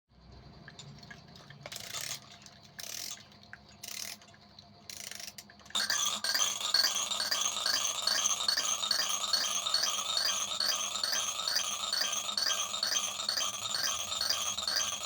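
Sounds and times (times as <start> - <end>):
toy mechanical rattling: 0.6 - 15.0.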